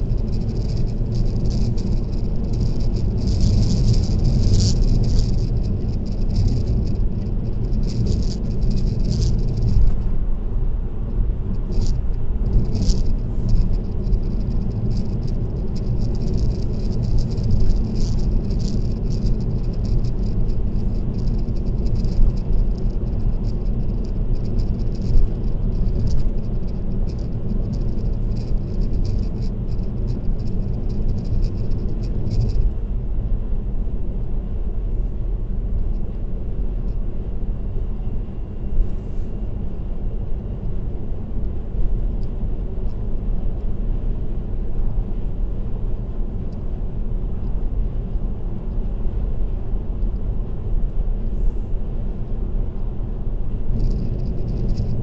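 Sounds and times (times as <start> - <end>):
rapid irregular rattle: 0.0 - 10.4, 11.1 - 32.8, 53.5 - 55.0
car road and tyre rumble: 0.0 - 55.0.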